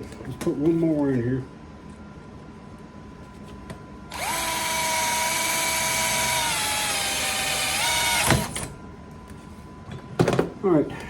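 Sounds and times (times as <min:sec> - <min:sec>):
power drill drilling metal: 0:04.1 - 0:08.7.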